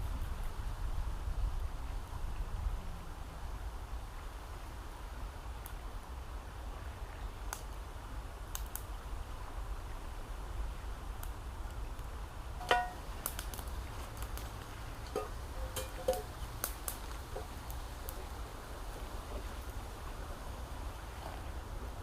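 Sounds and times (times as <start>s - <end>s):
campfire crackling: 4.0s - 22.0s.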